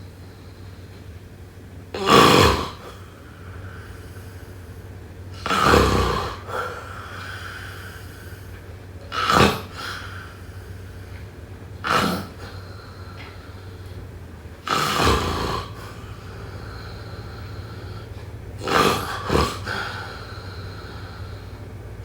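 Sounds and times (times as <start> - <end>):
faint low hum: 0.0 - 22.0
person snoring: 2.0 - 4.7, 5.4 - 8.5, 9.1 - 11.2, 11.8 - 14.0, 14.6 - 21.7.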